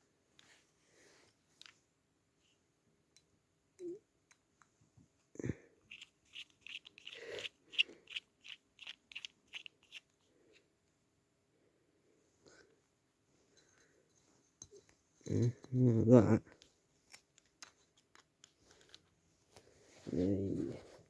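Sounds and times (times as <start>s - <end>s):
screwdriver scraping metal parts: 5.9s - 10.1s.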